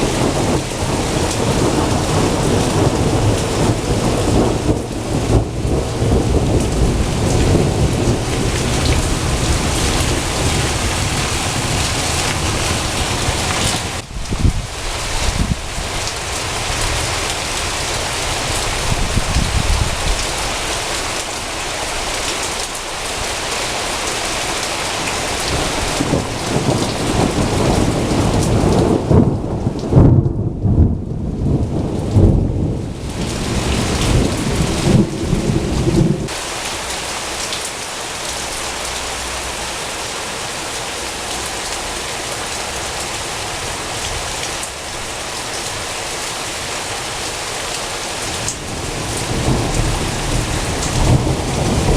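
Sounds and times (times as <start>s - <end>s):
rumble of thunder: 0.0s - 15.6s, 25.5s - 36.3s, 48.5s - 51.9s
heavy rain falling: 0.0s - 51.9s.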